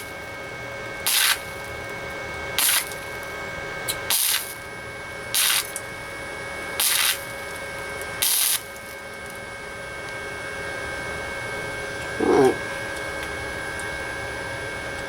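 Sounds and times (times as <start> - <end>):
welder hissing and crackling: 1.1 - 1.7, 2.6 - 3.2, 4.0 - 4.6, 5.3 - 5.8, 6.8 - 7.6, 8.2 - 9.0.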